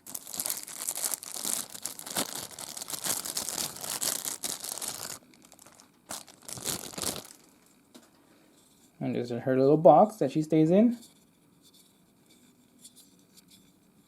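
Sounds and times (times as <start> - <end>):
packaging crinkling: 0.0 - 7.6.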